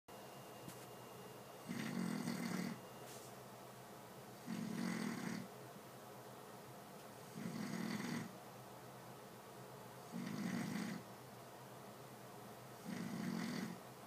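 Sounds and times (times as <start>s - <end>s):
person snoring: 1.7s - 2.8s, 4.4s - 5.5s, 7.3s - 8.3s, 10.1s - 11.0s, 12.8s - 13.8s.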